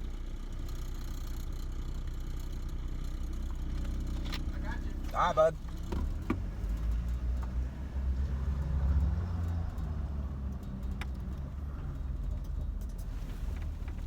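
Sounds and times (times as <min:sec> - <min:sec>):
car engine idling: 0:00.0 - 0:08.0, 0:11.2 - 0:14.0.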